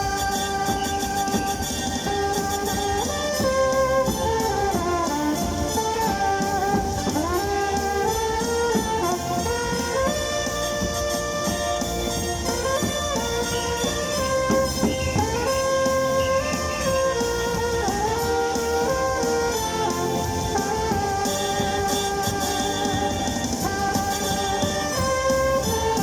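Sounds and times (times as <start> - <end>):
band playing slow melody: 0.0 - 26.0.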